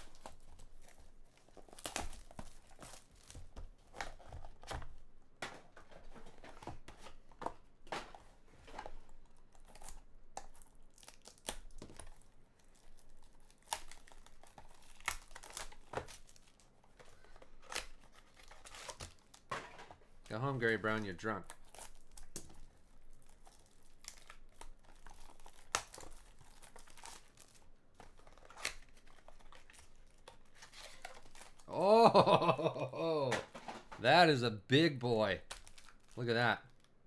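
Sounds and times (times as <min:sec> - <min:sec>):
card packaging tearing and crinkling: 0:00.0 - 0:05.0, 0:09.6 - 0:16.6, 0:17.5 - 0:20.0, 0:20.7 - 0:32.9
cards rustling and snapping: 0:00.0 - 0:20.2, 0:21.5 - 0:34.3.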